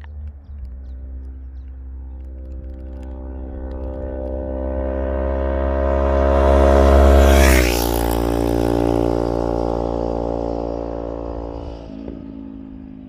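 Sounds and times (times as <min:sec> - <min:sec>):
motorcycle engine passing by: 0:00.4 - 0:13.0.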